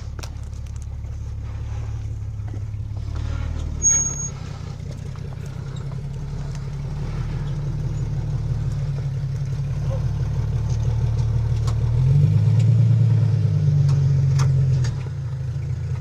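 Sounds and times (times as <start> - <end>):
vehicle engine running at low revs: 0.0 - 16.0
high-pitched squeak: 3.6 - 4.5.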